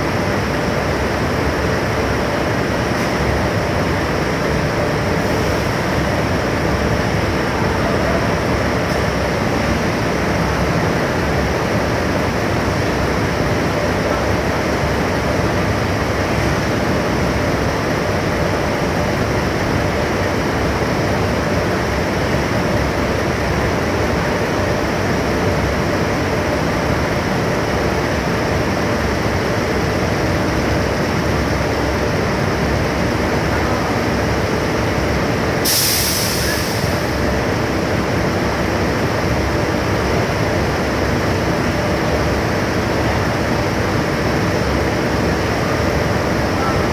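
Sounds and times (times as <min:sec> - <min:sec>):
loud machinery noise: 0:00.0 - 0:46.9
compressed air hiss: 0:35.6 - 0:37.2.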